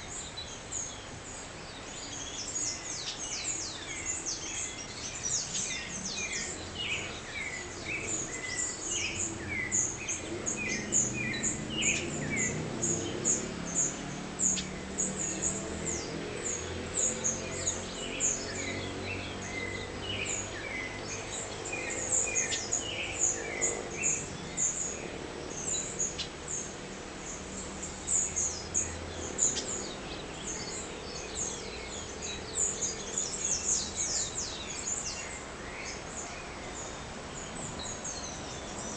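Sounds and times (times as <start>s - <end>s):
birds chirping and calling: 0.0s - 38.9s.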